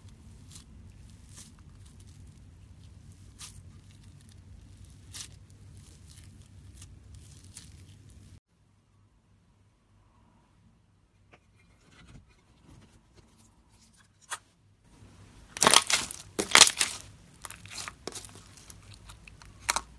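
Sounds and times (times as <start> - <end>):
slime crackling and squishing: 0.0 - 8.4, 15.4 - 19.9.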